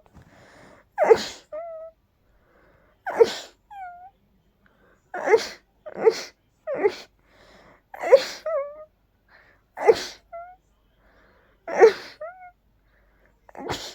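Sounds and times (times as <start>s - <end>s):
person sneezing: 1.0s - 1.5s, 3.1s - 3.6s, 5.2s - 7.1s, 9.8s - 10.3s, 13.5s - 13.9s.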